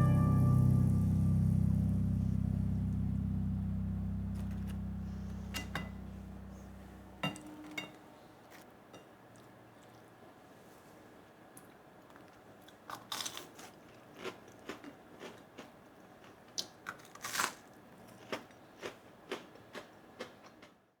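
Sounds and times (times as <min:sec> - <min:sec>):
crunchy fritters being chewed: 0:12.1 - 0:20.9.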